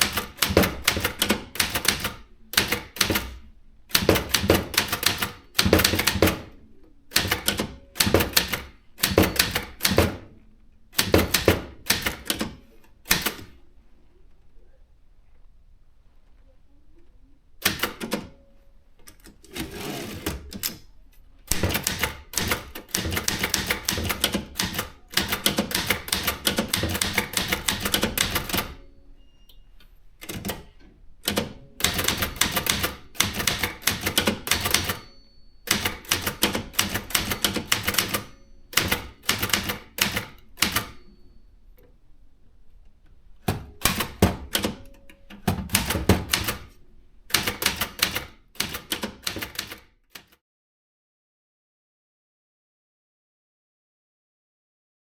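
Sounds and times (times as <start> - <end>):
typewriter keys clicking: 0.0 - 6.5, 7.1 - 10.2, 11.0 - 13.6, 17.6 - 18.4, 21.5 - 28.8, 30.2 - 35.1, 35.7 - 41.0, 43.4 - 50.4.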